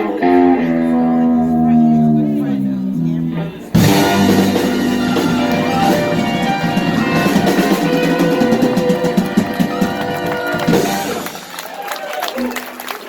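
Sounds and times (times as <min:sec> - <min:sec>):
guitar: 0:00.0 - 0:11.6
drums: 0:03.7 - 0:11.8
loud drum hit: 0:03.8 - 0:11.2.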